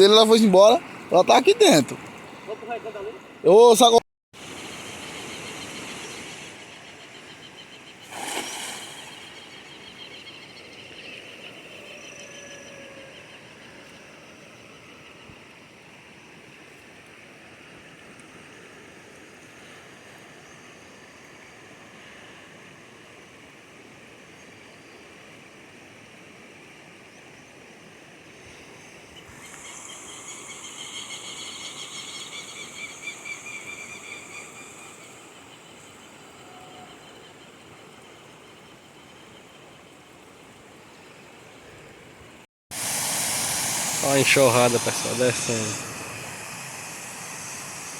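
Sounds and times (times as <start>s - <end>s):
rushing water: 0.0s - 6.9s, 8.0s - 10.2s, 28.9s - 47.9s
birds singing: 5.0s - 14.2s, 29.0s - 40.1s.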